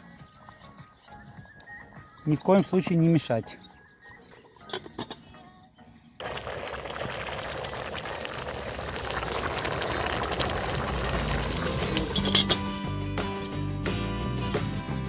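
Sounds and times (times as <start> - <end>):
food sizzling in a pot: 6.2 - 12.6.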